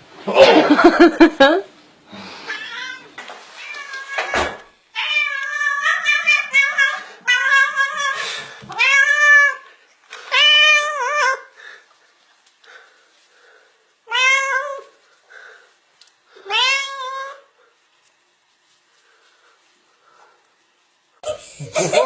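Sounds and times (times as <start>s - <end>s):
cat meowing: 2.5s - 9.6s, 14.1s - 14.9s, 16.4s - 17.5s.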